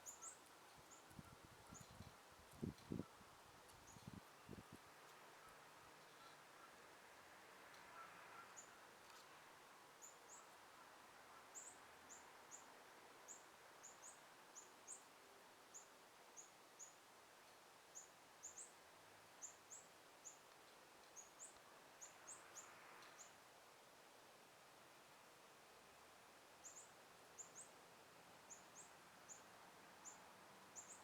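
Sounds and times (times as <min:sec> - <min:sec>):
small bird chirping: 0:00.0 - 0:02.1
faint outdoor hiss: 0:00.0 - 0:31.0.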